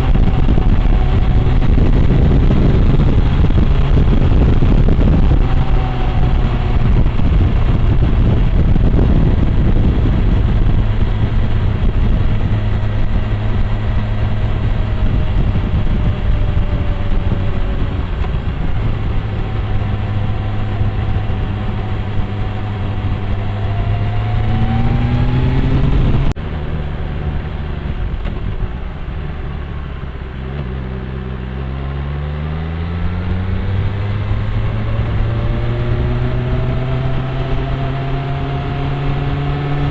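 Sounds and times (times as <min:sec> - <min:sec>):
motorcycle engine revving: 0:00.0 - 0:39.9
wind and road noise: 0:00.0 - 0:39.9.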